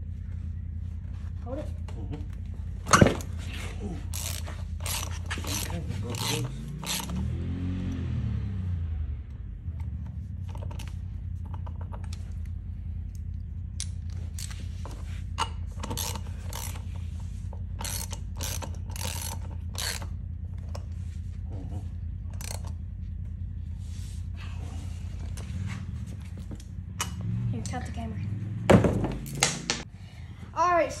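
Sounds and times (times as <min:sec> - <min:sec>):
steady low hum: 0:00.0 - 0:31.0
socket ratchet clicking: 0:04.1 - 0:07.3, 0:15.4 - 0:16.9, 0:17.8 - 0:20.1, 0:22.4 - 0:22.8.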